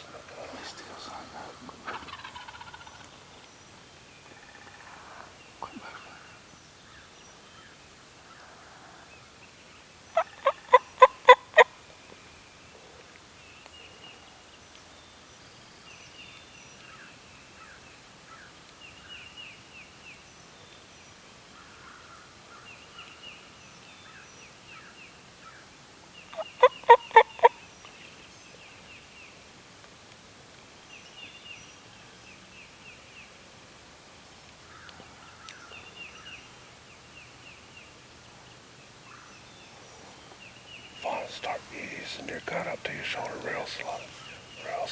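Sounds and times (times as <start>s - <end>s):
turkey gobbling: 1.8s - 3.2s, 10.2s - 11.7s, 26.4s - 27.6s.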